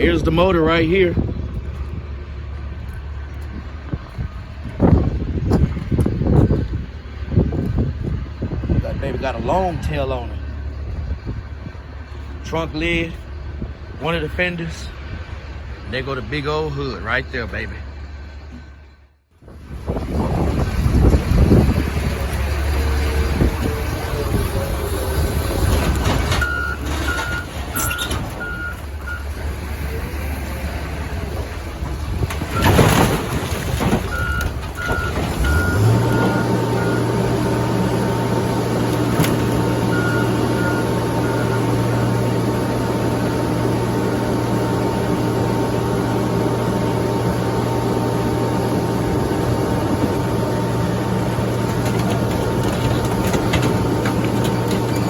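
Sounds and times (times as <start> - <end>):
engine drone: 0.0 - 55.0
loud clatter: 31.4 - 35.4, 51.4 - 55.0
reversing alarm beeping: 34.1 - 37.2.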